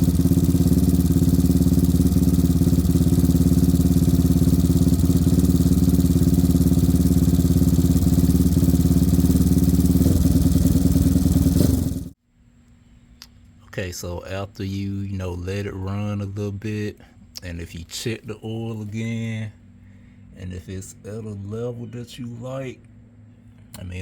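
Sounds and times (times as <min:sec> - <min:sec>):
engine idling: 0:00.0 - 0:12.2.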